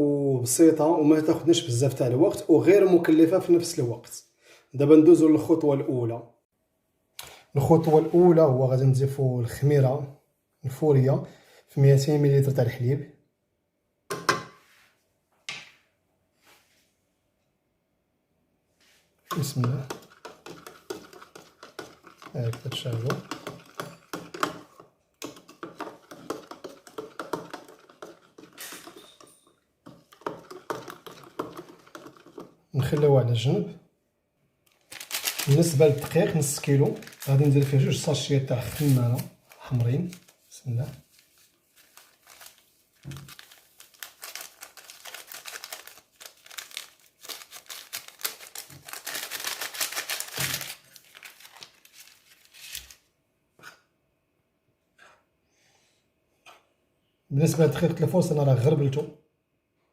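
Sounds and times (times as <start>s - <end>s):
paper sachets crinkling and tearing: 34.7s - 53.0s.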